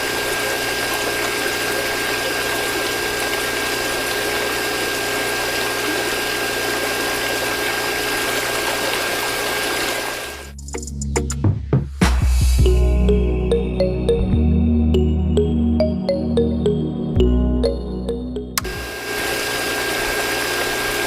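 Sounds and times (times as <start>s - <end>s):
water pump motor whine: 0.0s - 10.5s, 18.6s - 21.0s
water rushing and splashing: 0.0s - 10.5s.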